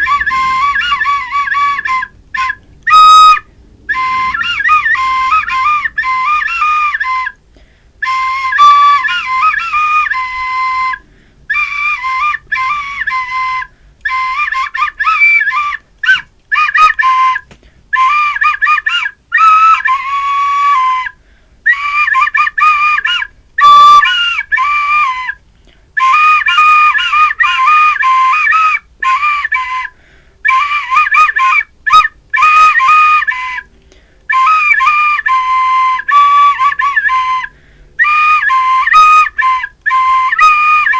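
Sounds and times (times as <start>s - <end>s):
short noisy burst: 0.0s - 9.9s
solo flute melody: 0.0s - 40.9s.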